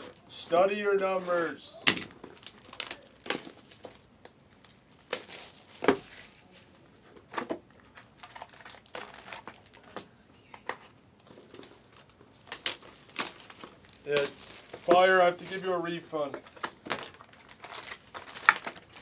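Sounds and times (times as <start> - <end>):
wrapper crinkling: 1.8 - 6.8, 7.7 - 10.0, 11.3 - 19.0.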